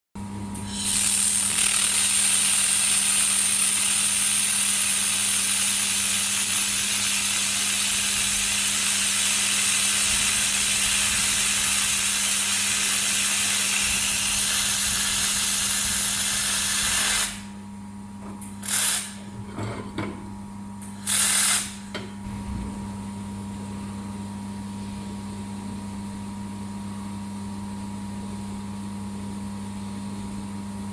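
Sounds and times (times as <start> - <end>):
laser welder hissing: 0.6 - 17.6, 18.4 - 19.4, 20.8 - 22.0.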